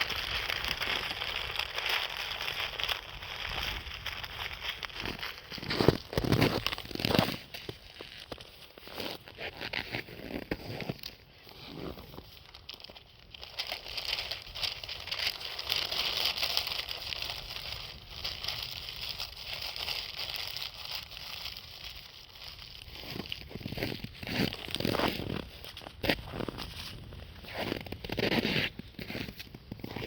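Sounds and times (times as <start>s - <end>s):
campfire crackling: 0.0s - 6.8s, 12.4s - 23.4s.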